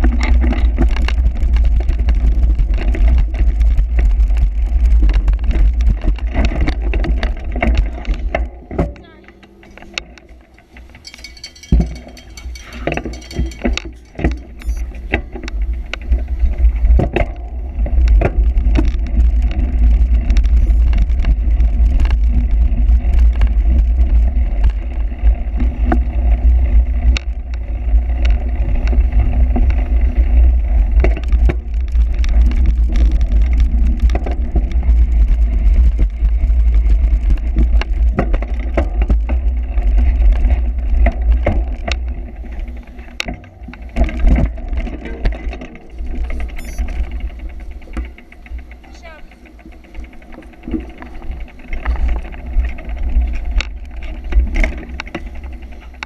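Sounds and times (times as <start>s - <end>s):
bicycle rattling and clicking: 0.0s - 56.0s.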